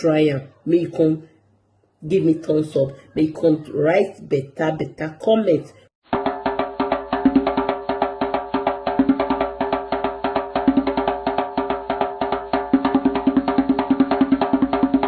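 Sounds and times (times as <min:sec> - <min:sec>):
fast percussive beat: 0:06.0 - 0:15.0.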